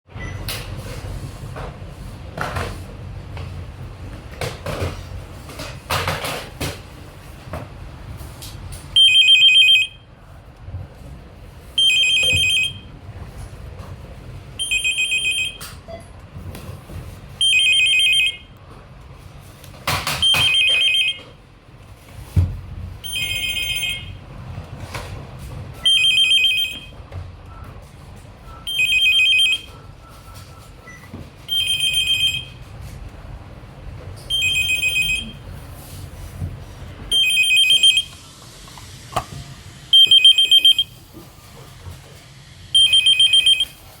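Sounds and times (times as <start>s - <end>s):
phone ringtone ringing: 9.0s - 10.0s, 11.8s - 12.9s, 14.6s - 15.6s, 17.4s - 18.5s, 20.2s - 21.2s, 23.0s - 24.2s, 25.9s - 26.9s, 28.7s - 29.7s, 31.5s - 32.6s, 34.3s - 35.4s, 37.1s - 38.2s, 40.0s - 41.0s, 42.8s - 43.8s.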